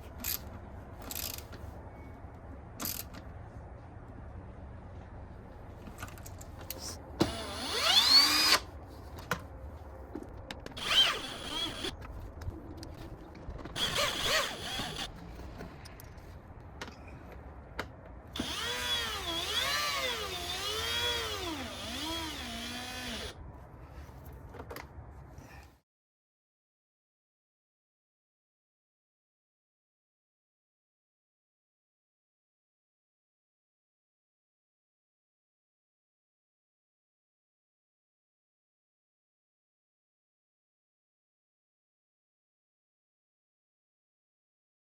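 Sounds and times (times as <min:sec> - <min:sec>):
power drill running: 0:07.2 - 0:08.6, 0:10.8 - 0:11.9, 0:13.8 - 0:15.1, 0:18.4 - 0:23.3.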